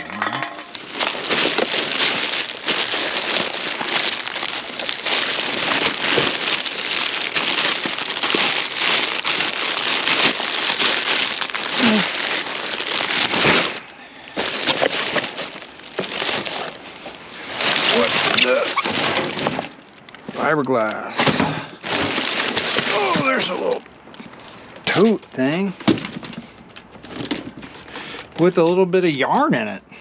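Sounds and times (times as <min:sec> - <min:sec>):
rummaging through scrap: 0:00.0 - 0:28.7.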